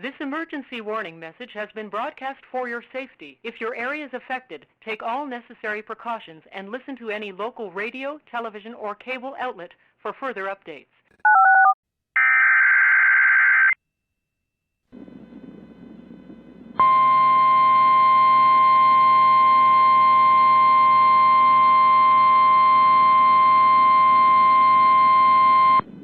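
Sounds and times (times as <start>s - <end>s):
low radio hiss: 15.0s - 16.8s
steady warning alarm tone: 16.8s - 25.8s.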